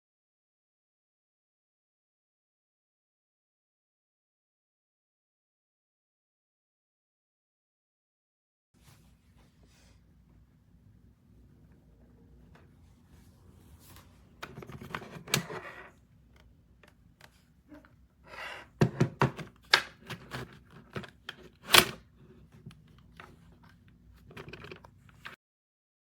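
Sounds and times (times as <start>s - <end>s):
plastic camera clicks and knocks: 18.8s - 22.0s.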